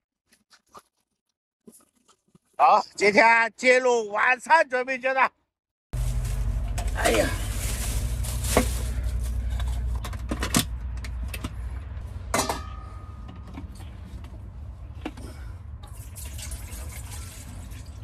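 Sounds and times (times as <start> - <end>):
water pouring and splashing: 15.8 - 18.0.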